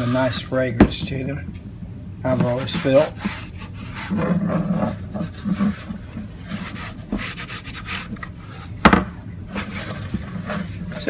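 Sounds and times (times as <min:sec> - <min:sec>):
cloth wiping a case: 0:02.3 - 0:08.8.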